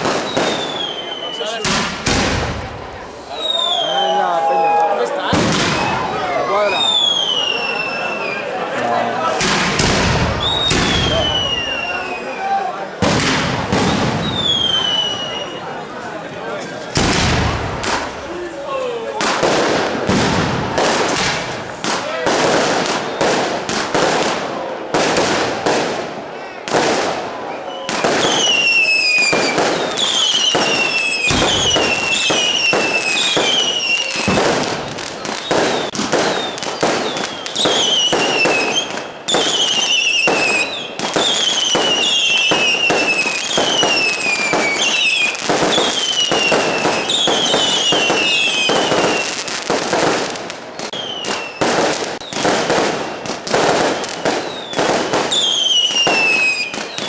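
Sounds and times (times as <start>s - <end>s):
falling firework whistles: 0.0s - 2.4s, 3.3s - 8.6s, 9.5s - 15.7s, 26.4s - 57.0s
fireworks bangs and crackling: 0.0s - 57.0s.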